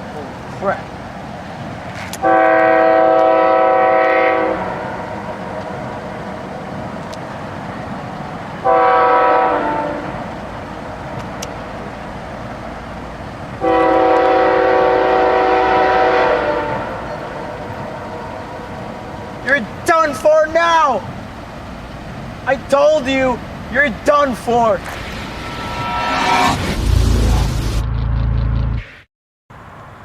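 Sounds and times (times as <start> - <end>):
train rumble: 0.0 - 28.8
locomotive air horn blasts: 2.2 - 5.3, 8.6 - 10.2, 13.6 - 18.7.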